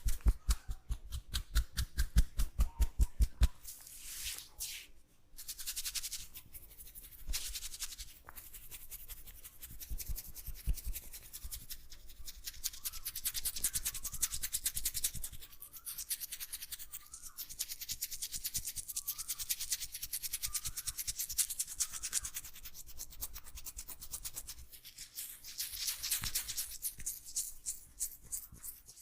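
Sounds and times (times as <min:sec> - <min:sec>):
hands rubbing hair and scalp: 0:00.0 - 0:12.0.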